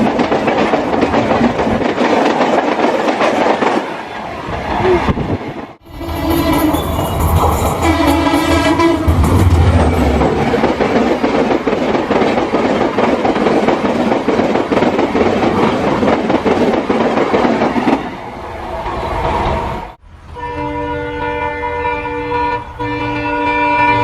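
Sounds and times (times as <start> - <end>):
locomotive rumble: 4.6 - 20.4
pitched tone: 5.9 - 10.7
wheel clatter over rail joints: 6.1 - 18.0.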